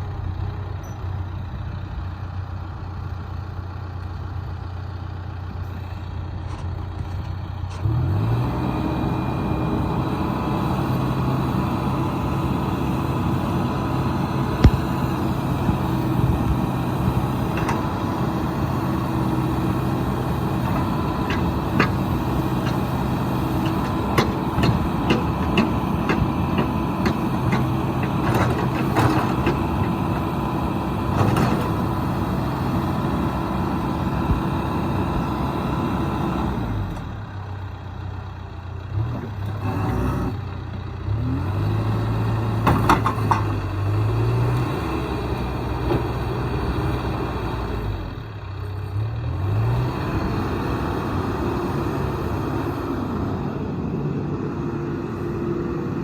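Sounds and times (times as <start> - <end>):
diesel engine running: 0.0 - 56.0
metallic clanks and ticks: 23.6 - 29.6.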